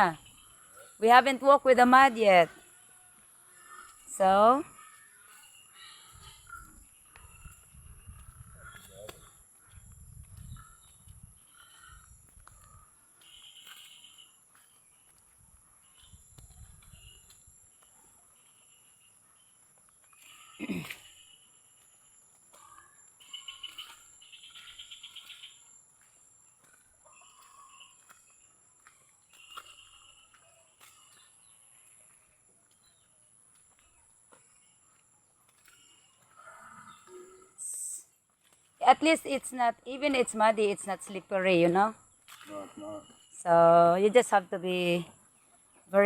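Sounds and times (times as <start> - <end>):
bird chirps: 0.0 - 33.2, 38.8 - 45.8
insects droning: 18.4 - 46.0.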